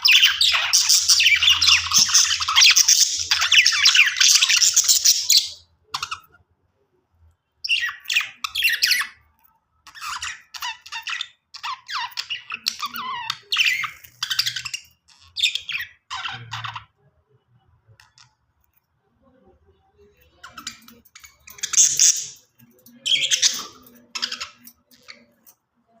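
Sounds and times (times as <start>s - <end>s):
budgerigars chirping and chattering: 0.0s - 6.4s, 7.7s - 9.2s, 9.9s - 16.9s, 20.3s - 25.5s.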